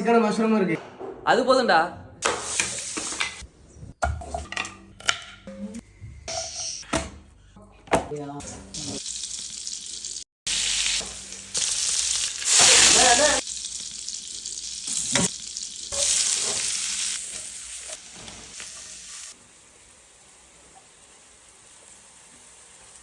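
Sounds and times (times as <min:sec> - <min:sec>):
chicken sizzling in a pan: 0:08.5 - 0:23.0.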